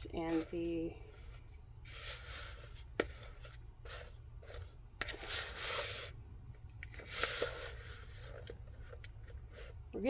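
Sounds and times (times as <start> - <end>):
spoon scraping thick mixture: 0.0 - 6.2.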